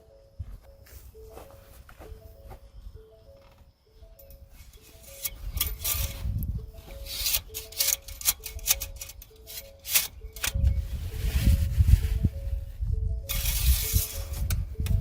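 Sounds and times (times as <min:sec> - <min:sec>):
simple repeating melody: 0:00.0 - 0:15.0
close rubbing and clicking: 0:04.8 - 0:06.3, 0:06.9 - 0:10.8.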